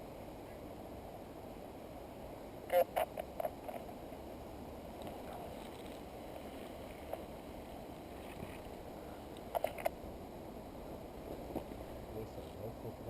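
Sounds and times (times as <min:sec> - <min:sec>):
camera housing rustling and rubbing: 0:08.1 - 0:10.0.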